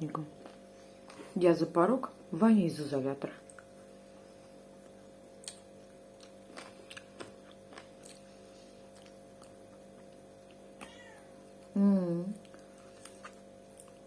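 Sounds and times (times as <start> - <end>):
steady electrical hum: 0.0 - 14.0
quiet chewing: 4.6 - 14.0.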